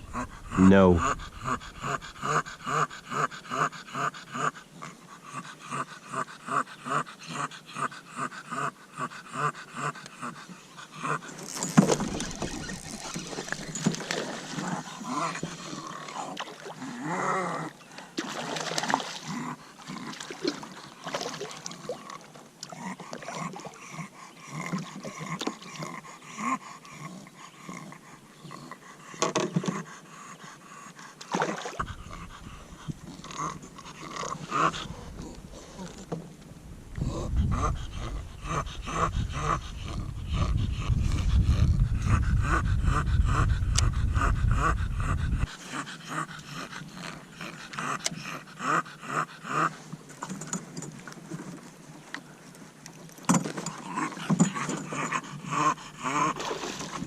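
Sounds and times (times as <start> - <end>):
dog panting: 0.0 - 14.0, 22.8 - 36.1, 37.0 - 49.8.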